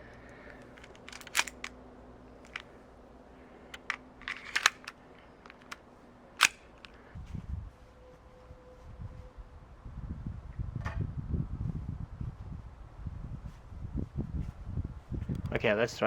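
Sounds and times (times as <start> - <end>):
pistol action clicks: 0.6 - 1.8, 3.7 - 5.8, 6.4 - 7.0
airgun pistol pops: 6.4 - 6.9.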